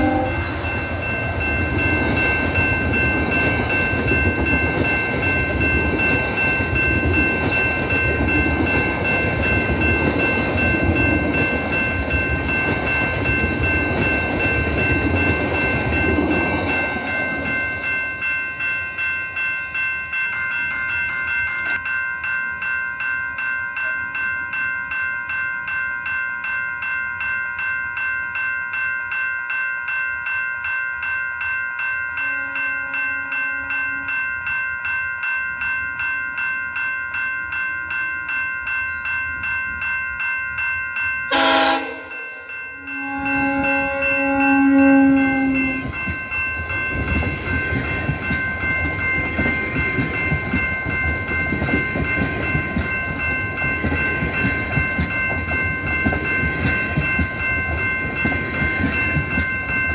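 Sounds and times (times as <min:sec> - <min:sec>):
train rumbling past: 0:00.0 - 0:19.1, 0:41.3 - 0:59.9
crossing warning bells ringing: 0:00.0 - 0:59.9.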